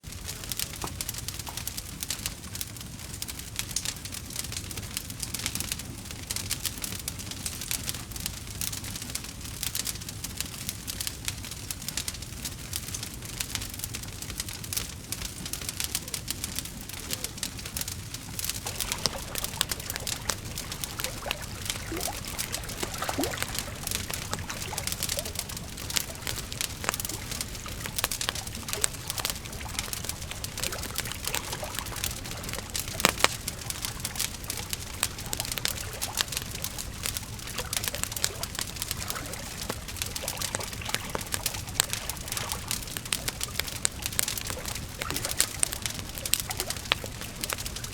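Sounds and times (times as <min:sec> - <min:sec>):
campfire crackling: 0:00.0 - 0:47.9
low rumble of flame: 0:00.0 - 0:47.9
loud fire snaps: 0:00.1 - 0:47.9.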